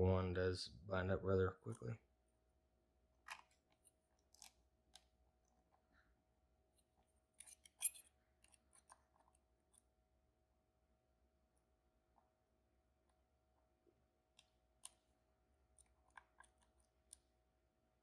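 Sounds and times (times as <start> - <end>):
lock pick clicking in a lock: 7.4 - 9.8.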